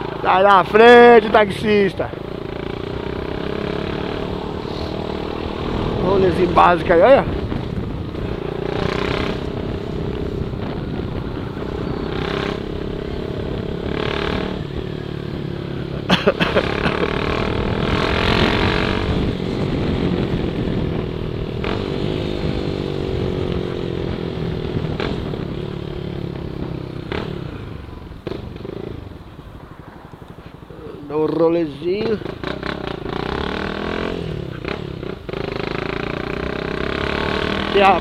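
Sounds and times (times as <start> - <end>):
motorcycle engine running: 0.0 - 29.1.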